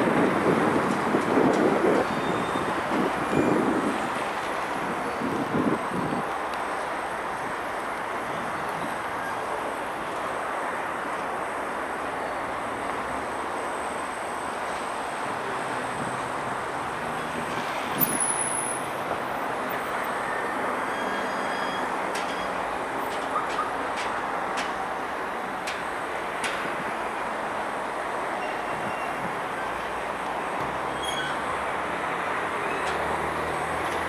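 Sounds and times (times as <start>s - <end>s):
railway wagons grinding: 0.0s - 34.0s
high squeal: 2.1s - 4.1s, 20.1s - 22.6s, 30.9s - 31.6s.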